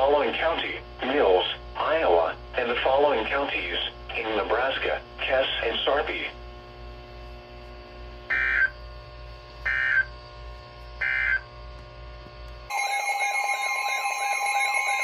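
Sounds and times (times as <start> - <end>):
screechy digital tone bursts: 8.3 - 8.7, 9.7 - 10.1, 11.0 - 11.4
two-tone alarm signal: 8.3 - 8.8, 9.7 - 10.1, 11.0 - 11.5, 12.7 - 15.0.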